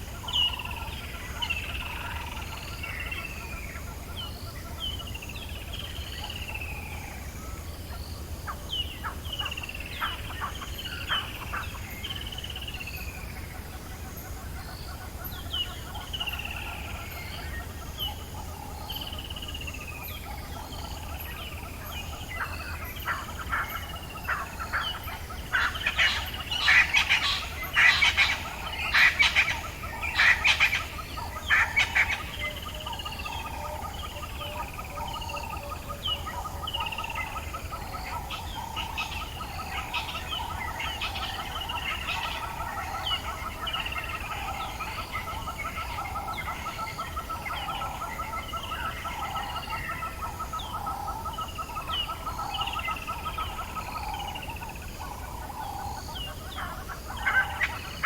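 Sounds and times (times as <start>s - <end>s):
harsh bird calls: 22.4s - 34.6s.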